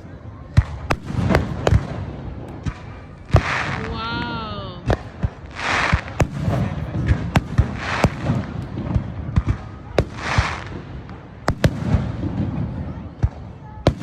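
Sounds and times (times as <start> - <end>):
fireworks bangs: 0.0 - 14.0.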